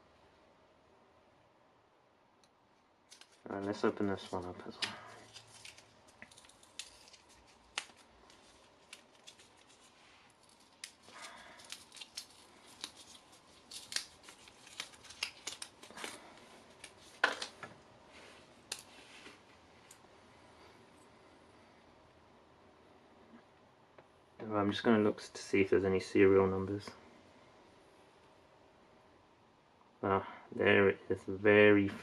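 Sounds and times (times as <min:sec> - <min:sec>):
paper rustling: 0:03.1 - 0:19.6.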